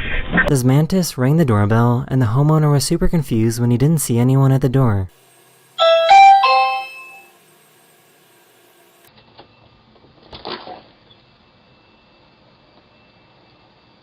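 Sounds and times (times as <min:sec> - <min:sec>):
two-tone doorbell chime: 0:05.8 - 0:07.4.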